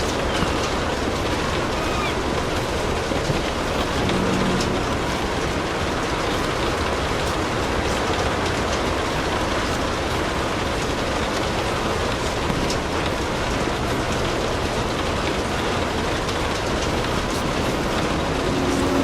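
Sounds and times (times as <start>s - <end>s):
steady rain hiss: 0.0s - 19.0s.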